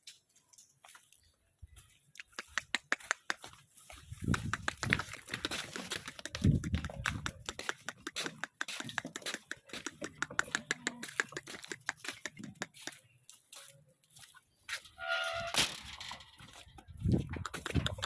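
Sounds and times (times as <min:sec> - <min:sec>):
rapid irregular clicks and crackles: 0:04.2 - 0:13.0, 0:15.8 - 0:18.0.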